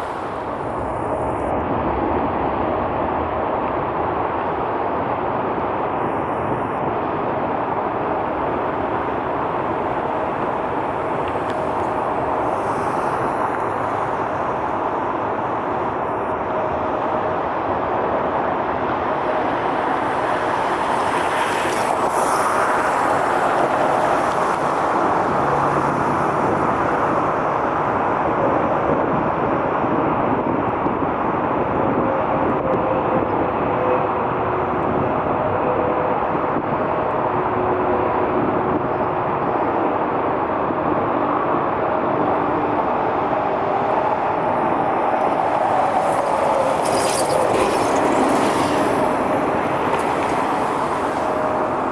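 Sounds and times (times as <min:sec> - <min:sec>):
jet engines running: 0:00.0 - 0:33.5, 0:34.2 - 0:51.9.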